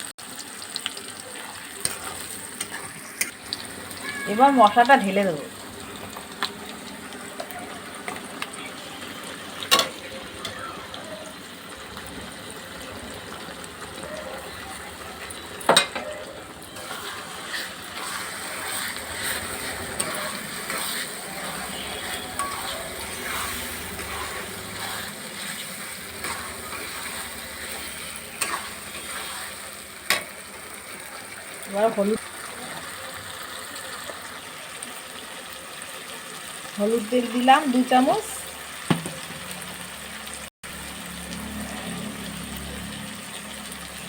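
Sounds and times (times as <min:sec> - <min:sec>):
onions sizzling in a pan: 0:00.0 - 0:44.0
utensil clanking against pan: 0:15.6 - 0:29.3.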